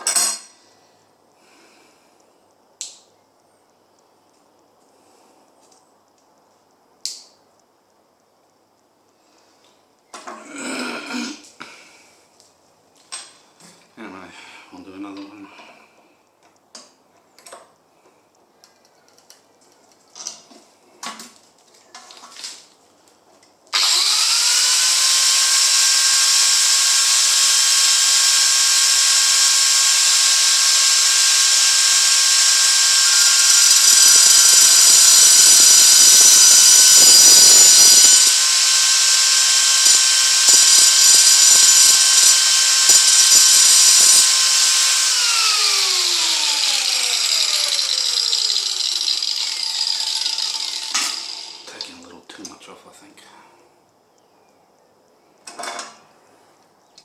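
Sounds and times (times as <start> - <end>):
electric cutting tool whining: 23.8 - 51.9.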